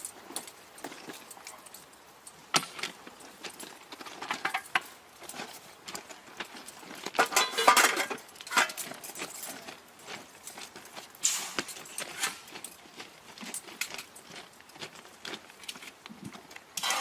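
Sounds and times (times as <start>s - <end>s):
metallic clinks and knocks: 0.0s - 5.7s, 6.6s - 9.8s.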